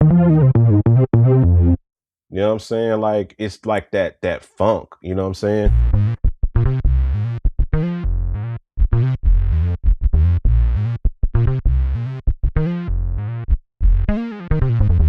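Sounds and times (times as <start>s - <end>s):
funky synthesizer bass line: 0.0s - 1.8s, 5.6s - 15.0s.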